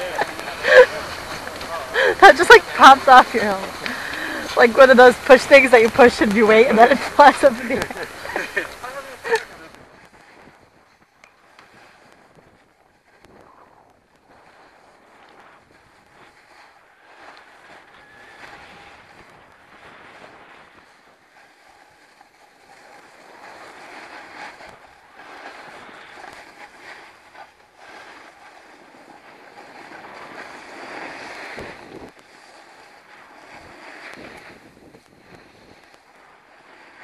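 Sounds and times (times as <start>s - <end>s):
snowboard sliding over snow: 0.0s - 37.0s
wind buffeting microphone: 33.5s - 37.0s.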